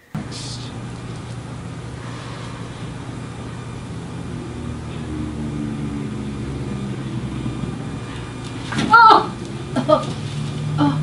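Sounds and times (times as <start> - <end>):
low mechanical hum: 0.0 - 11.0.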